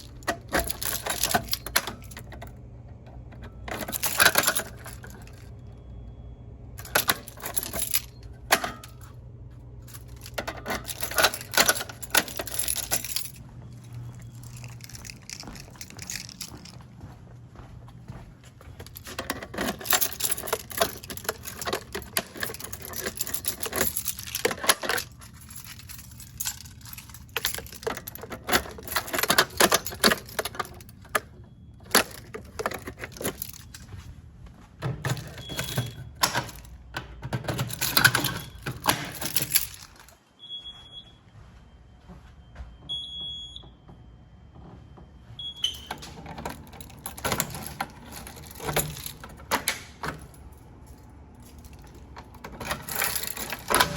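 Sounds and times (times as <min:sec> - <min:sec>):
fire alarm pull station rattling: 0:00.0 - 0:06.2, 0:06.8 - 0:09.2, 0:09.8 - 0:16.8, 0:18.8 - 0:34.0, 0:34.8 - 0:40.2, 0:45.4 - 0:53.9.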